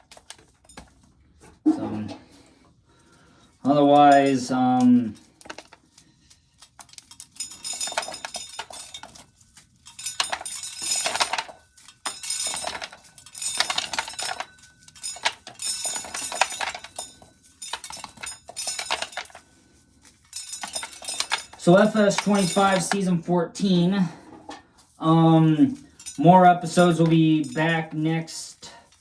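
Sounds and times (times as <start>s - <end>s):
corn kernels rattling: 0.0s - 0.9s, 3.6s - 6.0s, 6.6s - 23.8s, 24.8s - 29.0s.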